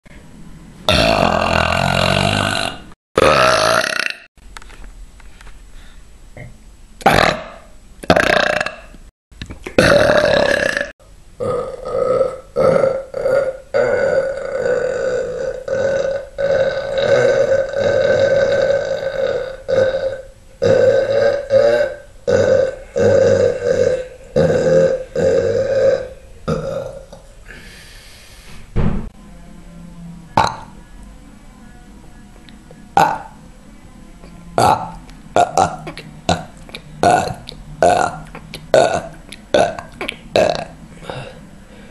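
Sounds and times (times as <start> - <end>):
man burping loudly: 0.9 - 4.3, 6.4 - 9.0, 9.8 - 27.2, 30.4 - 30.7, 33.0 - 33.4, 34.6 - 41.4.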